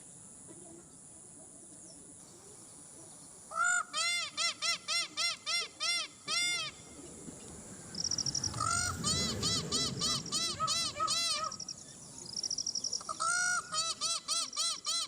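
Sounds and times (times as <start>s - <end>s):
peafowl honking calls: 3.5s - 7.1s, 7.9s - 11.8s, 13.0s - 15.0s.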